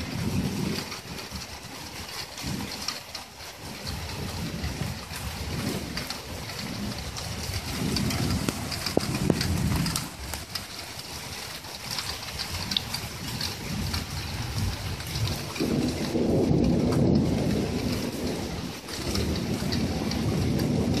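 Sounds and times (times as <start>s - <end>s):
heavy rain pouring: 0.0s - 21.0s
deep rumble: 3.8s - 21.0s.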